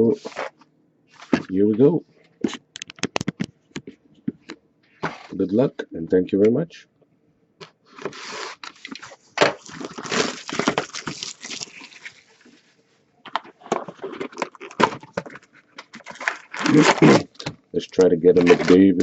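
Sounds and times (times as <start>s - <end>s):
cardboard box and packs rustling: 7.9s - 17.6s, 18.3s - 19.0s
plastic wrapping crinkling and tearing: 8.0s - 12.7s, 13.3s - 19.0s.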